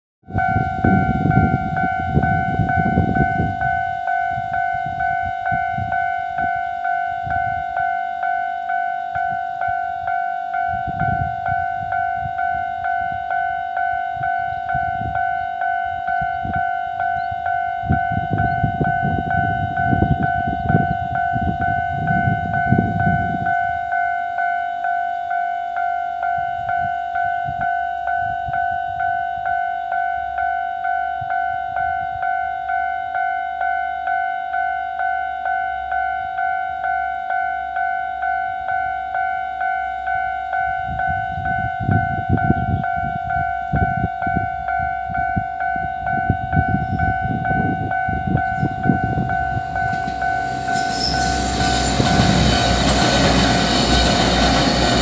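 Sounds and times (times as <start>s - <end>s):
level crossing warning bell: 0.3s - 55.0s
low rumbling: 48.3s - 55.0s.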